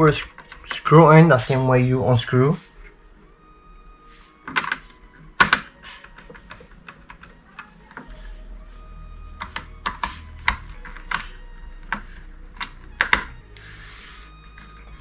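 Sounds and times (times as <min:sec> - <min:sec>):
low steady hum: 0:06.4 - 0:15.0.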